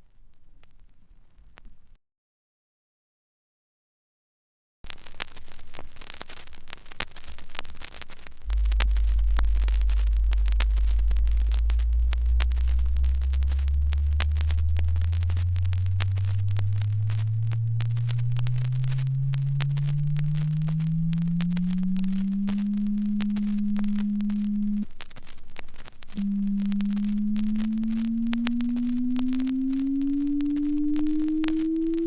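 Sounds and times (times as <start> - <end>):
scattered crackling clicks: 4.9 - 32.0
low hum rising in pitch: 8.4 - 24.9, 26.2 - 32.0.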